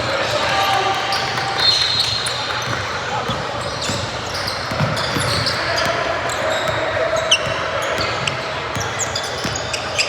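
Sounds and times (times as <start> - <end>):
sneakers squeaking on hardwood: 1.1 - 10.0.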